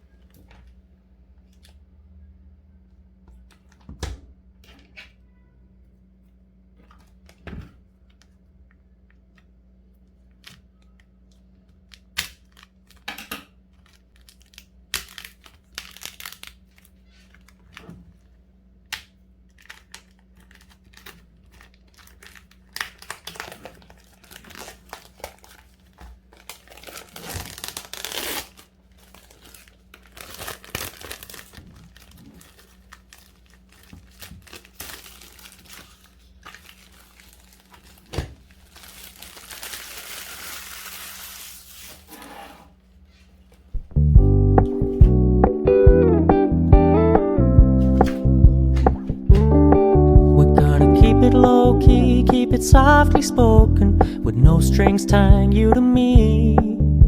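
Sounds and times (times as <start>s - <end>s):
plastic film and cardboard crinkling: 10.1s - 18.4s, 19.1s - 42.3s
low hum: 43.8s - 57.0s.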